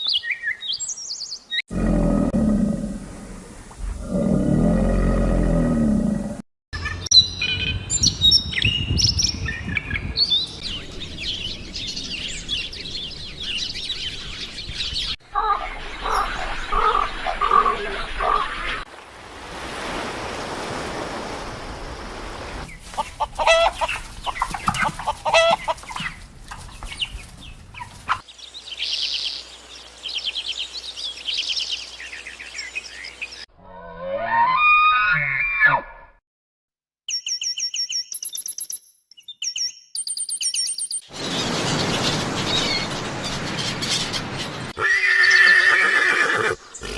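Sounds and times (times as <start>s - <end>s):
birds chirping: 0.0s - 1.6s, 6.8s - 18.9s, 21.7s - 33.5s, 37.1s - 46.9s
fowl clucking: 22.9s - 26.2s.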